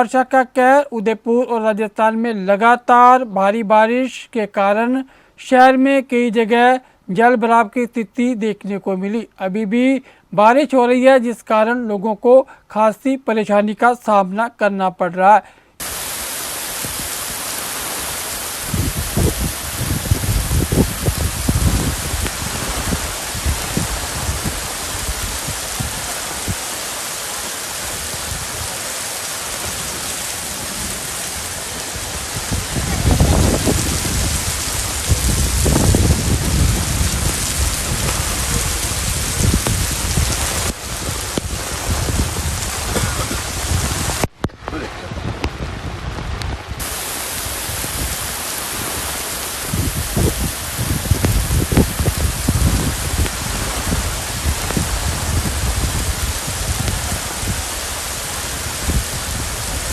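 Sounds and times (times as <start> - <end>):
heavy rain: 15.8 - 59.9.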